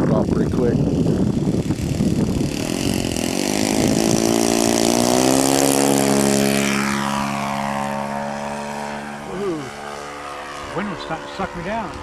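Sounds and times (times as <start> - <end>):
high whine of passing plane: 0.0 - 12.0
model airplane motor buzzing: 0.0 - 12.0
wind noise on microphone: 0.0 - 12.0.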